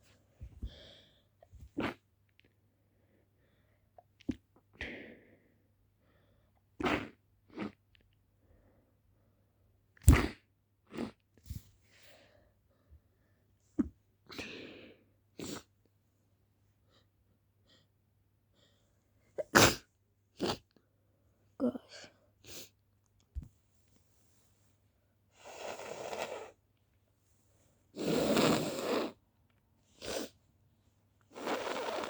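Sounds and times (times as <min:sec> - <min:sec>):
breathing: 0:00.6 - 0:01.4, 0:02.8 - 0:03.9, 0:04.8 - 0:06.6, 0:08.4 - 0:09.6, 0:11.8 - 0:13.5, 0:18.5 - 0:19.0.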